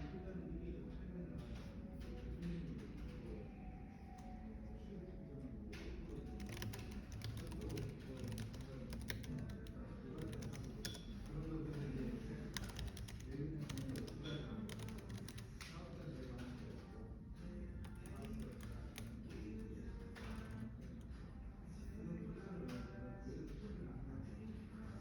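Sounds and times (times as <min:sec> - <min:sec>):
computer keyboard typing: 0:01.3 - 0:04.6, 0:05.6 - 0:21.3.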